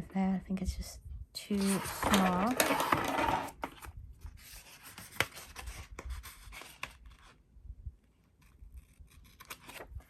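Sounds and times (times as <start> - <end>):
paper rustling: 1.6 - 7.4, 9.2 - 10.0.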